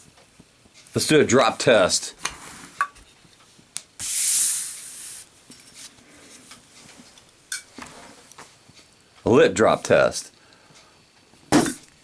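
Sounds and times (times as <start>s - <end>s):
lighter flame hiss: 3.8s - 5.3s.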